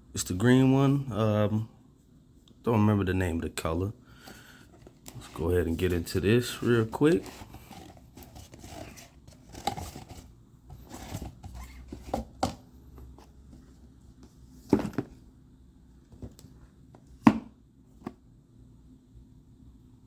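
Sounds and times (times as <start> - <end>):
packaging rustling and scraping: 4.6 - 12.4.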